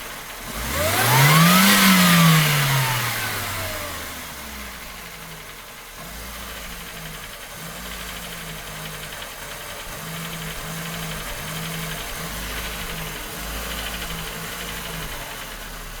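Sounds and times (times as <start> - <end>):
car engine revving and idling: 0.0 - 16.0
rhythmic engine knocking: 4.9 - 16.0.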